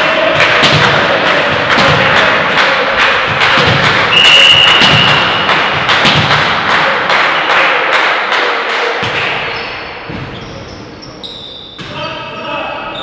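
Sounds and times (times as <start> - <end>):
fans thumping a steady rhythm: 0.0 - 10.3
long whistle blast: 4.1 - 5.4.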